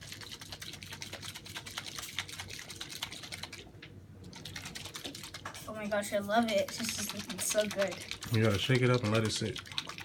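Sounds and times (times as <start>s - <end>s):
container shaken rattling: 6.4s - 10.0s.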